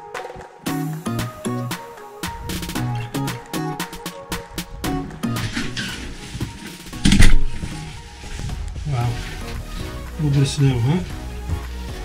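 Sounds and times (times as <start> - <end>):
background music with steady beat: 0.0 - 12.0
loud thump: 7.0 - 7.6.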